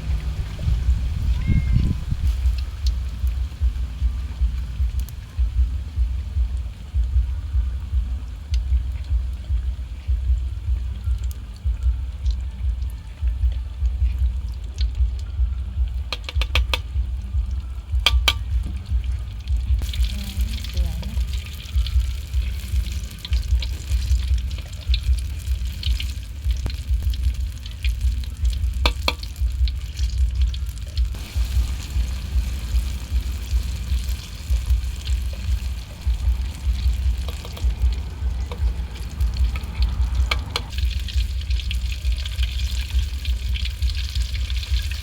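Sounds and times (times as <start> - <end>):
food sizzling in hot oil: 0.0 - 13.0, 14.2 - 45.0
utensil clicking against pan: 15.9 - 19.0, 19.8 - 45.0.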